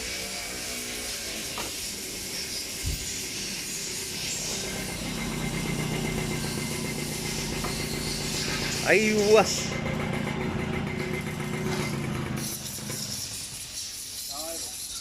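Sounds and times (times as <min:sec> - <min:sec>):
vehicle engine humming: 0:04.1 - 0:13.6.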